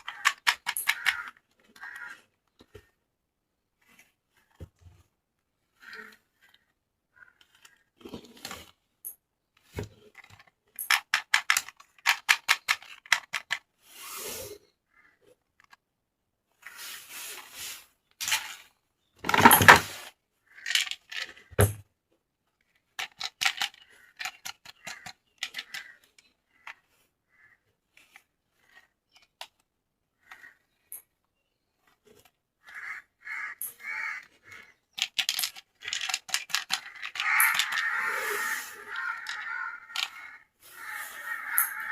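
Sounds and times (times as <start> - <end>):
hard plastic toy parts clicking: 0.0 - 2.8, 8.4 - 13.7, 18.2 - 21.9, 22.6 - 26.9, 28.0 - 29.7, 33.6 - 40.4.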